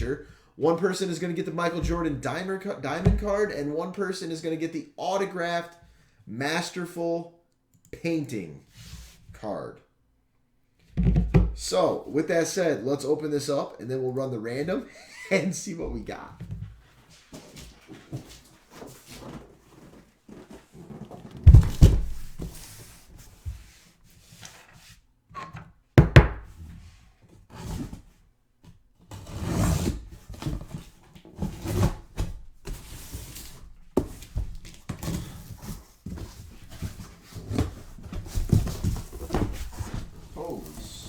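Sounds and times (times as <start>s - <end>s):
boxes scraping: 16.1s - 25.0s, 29.1s - 41.0s
cardboard rustling: 16.6s - 24.4s, 30.0s - 41.0s
cardboard box thumping down: 21.4s - 22.6s.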